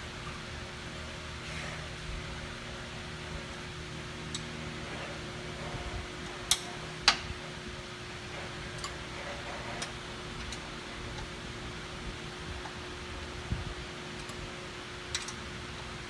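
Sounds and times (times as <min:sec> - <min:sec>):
steady hum: 0:00.0 - 0:16.0
tools clicking: 0:15.1 - 0:15.4.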